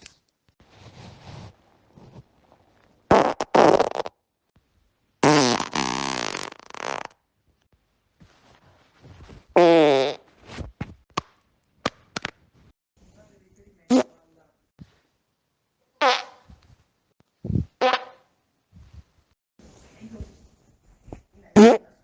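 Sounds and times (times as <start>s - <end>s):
human farts: 3.1s - 4.2s, 5.2s - 7.2s, 9.5s - 10.7s, 13.9s - 14.1s, 16.0s - 16.6s, 17.5s - 18.3s, 21.6s - 21.9s.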